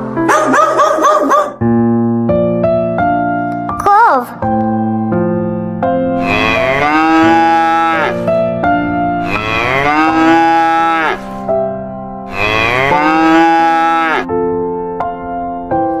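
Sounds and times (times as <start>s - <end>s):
keyboard music with held notes: 0.0s - 16.0s
cow mooing: 6.2s - 8.4s, 9.2s - 11.4s, 12.3s - 14.3s.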